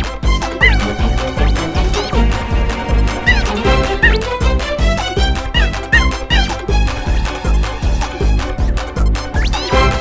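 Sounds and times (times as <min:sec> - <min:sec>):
upbeat music with bass beat: 0:00.0 - 0:10.0
high rising slides: 0:00.6 - 0:06.3.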